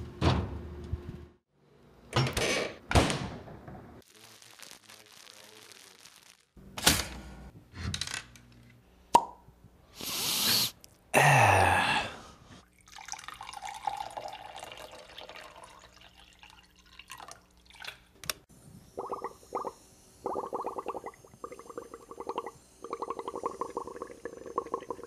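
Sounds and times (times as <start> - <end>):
water running into basin: 12.8 - 17.9.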